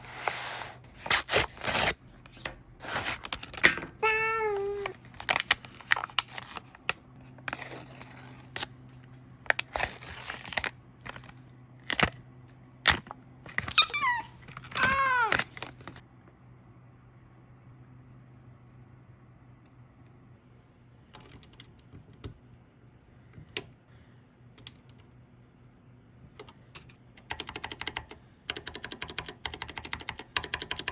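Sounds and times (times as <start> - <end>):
cat meowing: 4.0 - 4.9, 13.7 - 15.5.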